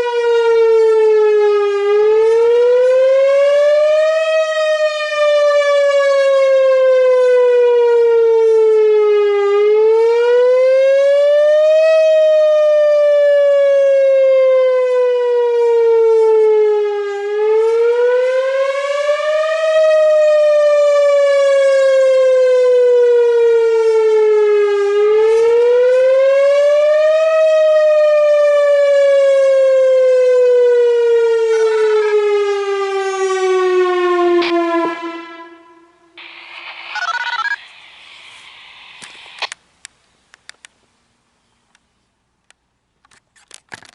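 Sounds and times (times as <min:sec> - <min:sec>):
warning siren wailing: 0:00.0 - 0:37.6.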